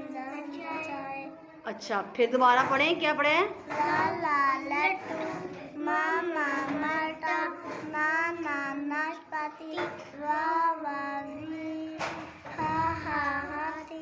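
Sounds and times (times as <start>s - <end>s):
girls chanting letter sounds: 3.6s - 14.0s.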